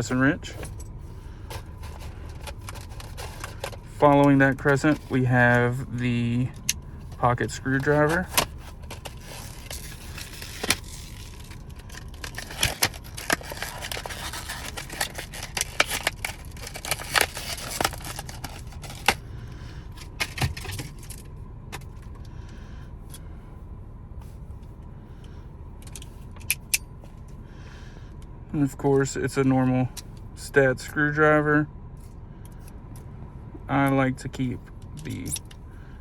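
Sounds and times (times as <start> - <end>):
packaging rustling: 1.5 - 5.1, 7.8 - 19.3.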